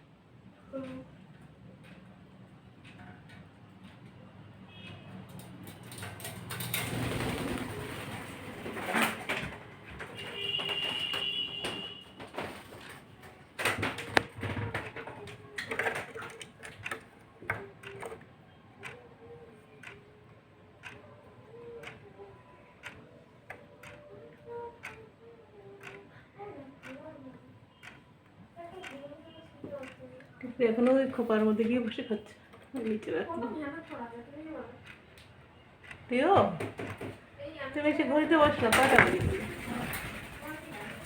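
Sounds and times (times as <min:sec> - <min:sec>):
small clicks and taps: 0:00.7 - 0:04.2, 0:09.3 - 0:19.1, 0:20.8 - 0:22.1, 0:22.8 - 0:25.1, 0:25.7 - 0:26.1, 0:26.8 - 0:33.1, 0:34.8 - 0:37.2.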